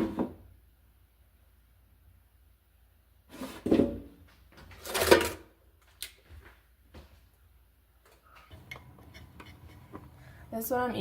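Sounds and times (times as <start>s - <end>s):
low steady hum: 8.4s - 11.0s.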